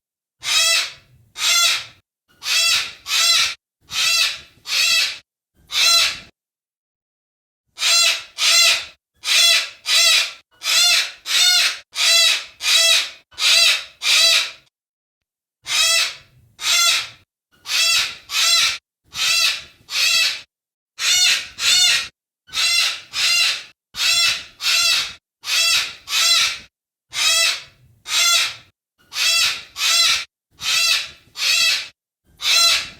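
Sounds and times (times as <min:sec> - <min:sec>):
cockatoo calling: 0:21.0 - 0:32.9.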